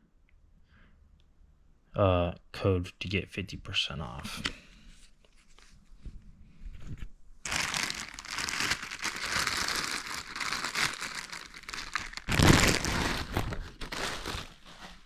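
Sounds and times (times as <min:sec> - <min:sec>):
plastic packaging crinkling: 0:07.4 - 0:15.0.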